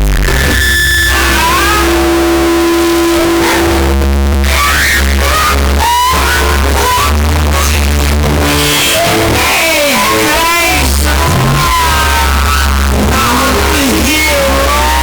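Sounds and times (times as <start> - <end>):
distorted electronic music: 0.0 - 15.0
stretched cartoon burp: 8.6 - 13.9.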